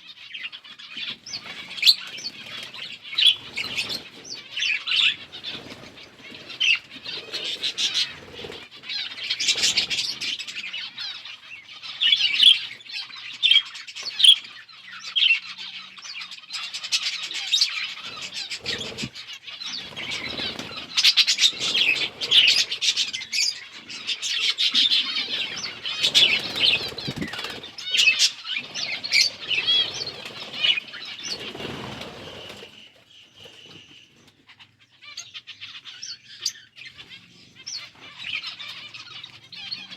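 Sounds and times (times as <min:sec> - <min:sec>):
budgerigars chirping and chattering: 0:00.0 - 0:39.9
wing flutters: 0:01.2 - 0:10.4, 0:18.0 - 0:33.8.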